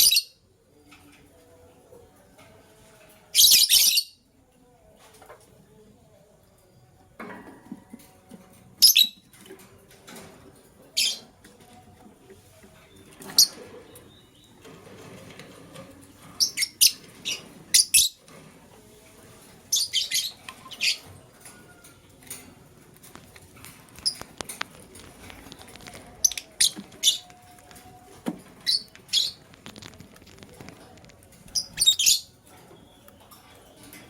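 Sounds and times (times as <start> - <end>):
soft movement noise: 9.6 - 34.0.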